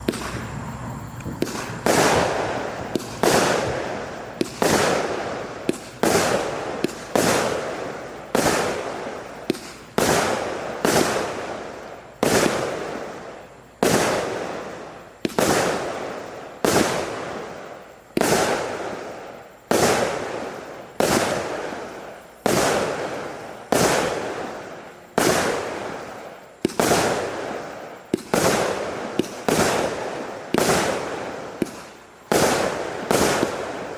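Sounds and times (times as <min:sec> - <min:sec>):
firework shots firing: 0:00.0 - 0:33.9.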